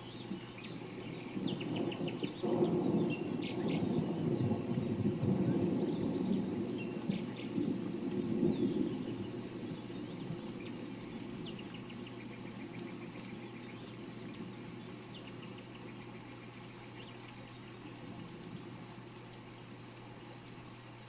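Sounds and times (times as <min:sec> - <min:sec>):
small birds chirping: 0:00.0 - 0:18.0
rain hiss: 0:00.0 - 0:21.0
rumble of thunder: 0:01.0 - 0:11.7.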